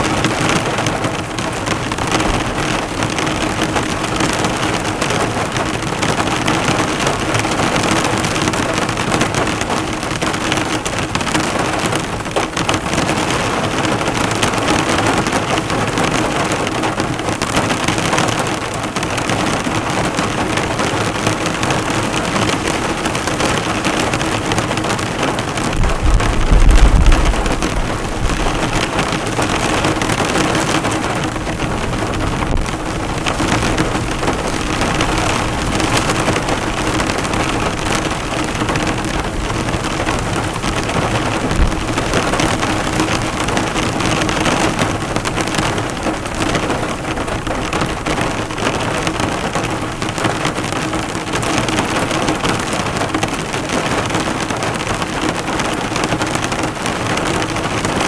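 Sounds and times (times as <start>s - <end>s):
heavy rain pelting a car: 0.0s - 58.0s
low rumble: 25.8s - 28.9s.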